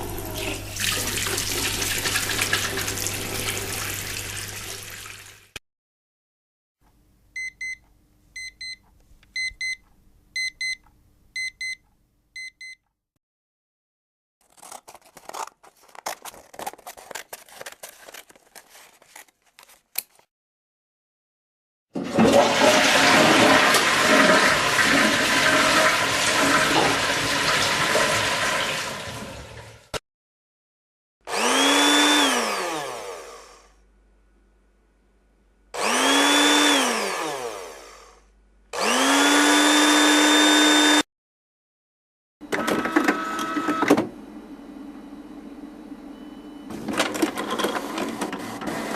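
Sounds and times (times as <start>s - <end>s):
small appliance motor whirring: 31.3s - 33.8s, 35.8s - 38.2s, 38.8s - 41.0s.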